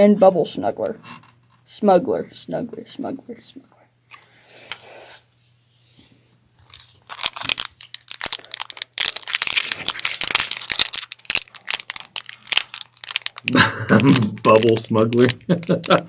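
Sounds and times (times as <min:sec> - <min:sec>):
packaging crinkling: 0:06.6 - 0:16.0.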